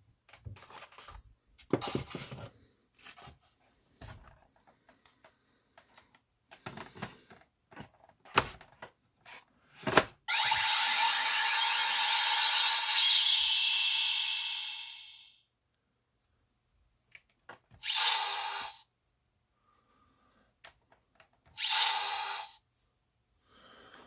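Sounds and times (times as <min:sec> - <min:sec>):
steady electronic sound: 0:10.3 - 0:15.4.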